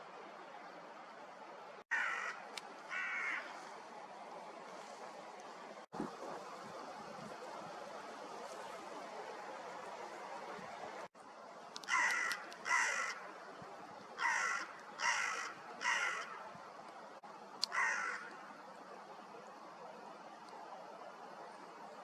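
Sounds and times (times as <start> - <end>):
crow cawing: 1.9 - 3.7, 11.8 - 13.3, 14.2 - 16.4, 17.6 - 18.4.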